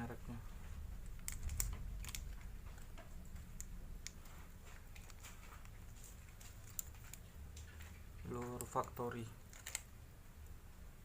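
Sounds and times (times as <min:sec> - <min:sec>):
faint low hum: 0:00.0 - 0:11.0
plastic package clicks: 0:01.2 - 0:03.7, 0:09.5 - 0:09.9.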